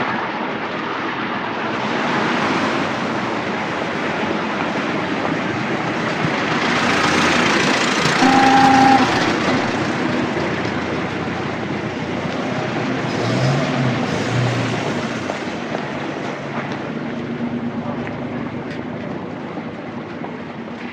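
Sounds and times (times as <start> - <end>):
traffic rushing: 0.0 - 20.9
car horn honking: 8.2 - 9.8.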